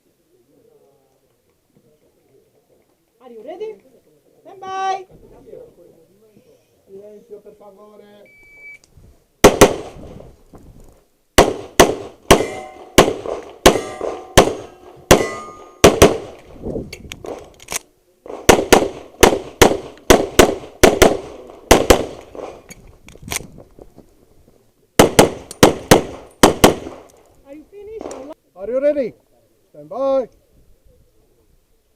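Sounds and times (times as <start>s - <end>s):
handgun shots: 11.4s - 16.4s
steel target ringing: 12.3s - 13.1s, 13.7s - 16.0s.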